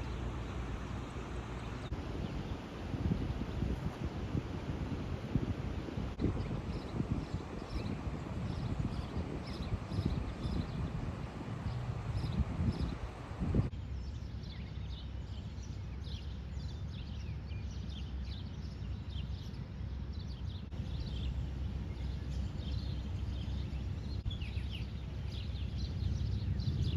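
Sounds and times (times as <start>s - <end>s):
small birds chirping: 6.2s - 26.9s.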